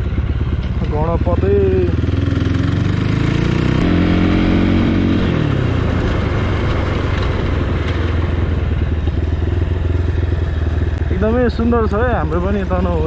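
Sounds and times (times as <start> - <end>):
motorcycle engine running: 0.0 - 13.0
steady rushing noise: 3.3 - 12.8.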